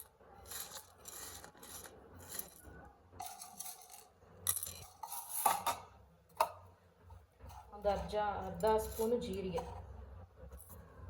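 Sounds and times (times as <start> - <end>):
spoon scraping and tapping dish: 3.2 - 6.6.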